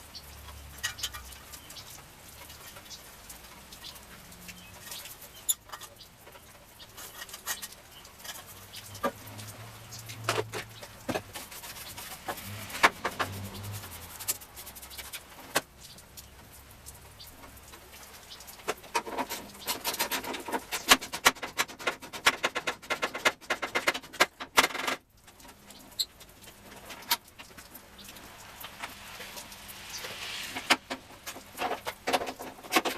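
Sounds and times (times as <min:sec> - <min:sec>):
rapid clicking and rattling: 0:04.5 - 0:28.1, 0:30.6 - 0:32.9
hand tools clicking and knocking: 0:05.5 - 0:14.4, 0:18.6 - 0:25.0.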